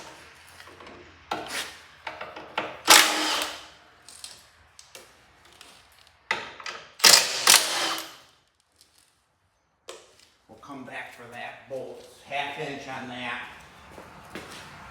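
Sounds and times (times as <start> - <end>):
power tool bursts on bolt: 2.8 - 3.7, 7.0 - 8.3.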